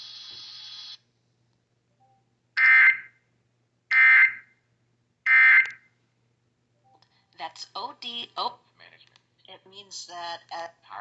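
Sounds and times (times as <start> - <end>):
radio background hiss: 0.0 - 1.0.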